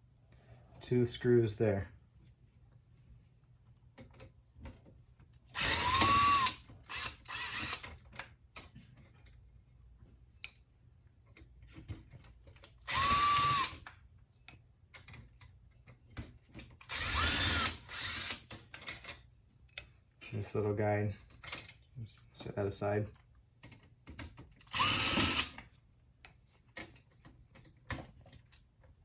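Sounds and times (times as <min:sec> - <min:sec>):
electric screwdriver motor whine: 0:05.6 - 0:07.8, 0:12.9 - 0:13.8, 0:16.9 - 0:18.4, 0:24.7 - 0:25.6
small clicks of screws: 0:05.6 - 0:09.4, 0:11.3 - 0:19.9, 0:23.6 - 0:28.7.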